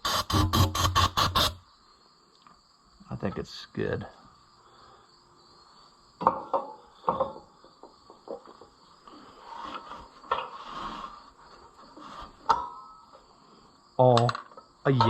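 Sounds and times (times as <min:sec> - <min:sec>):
scraping rub: 0:09.2 - 0:12.5.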